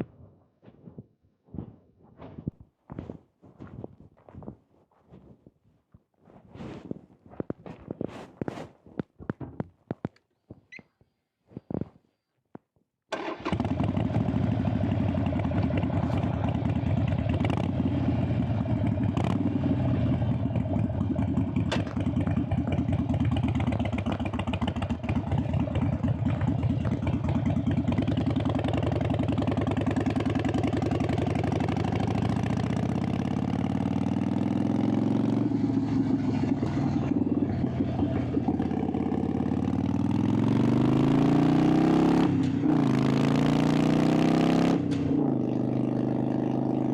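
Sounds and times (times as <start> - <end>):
motorcycle engine idling and revving: 13.2 - 46.9.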